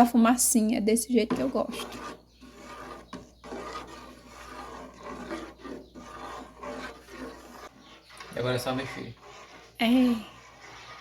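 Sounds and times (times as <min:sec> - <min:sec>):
spoon scraping bottom of pot: 0:01.2 - 0:11.0.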